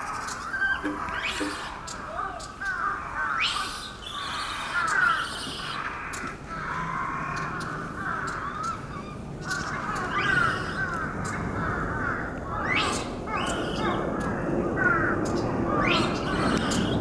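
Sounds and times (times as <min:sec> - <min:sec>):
chorus of high animal calls: 0:00.1 - 0:17.0
harsh animal calls: 0:00.6 - 0:02.0.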